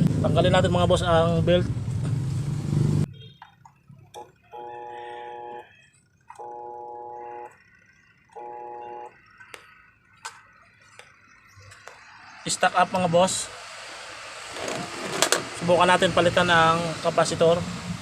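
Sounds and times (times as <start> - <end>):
electronic beeps: 3.1 - 12.5
washing machine motor humming: 6.4 - 9.4.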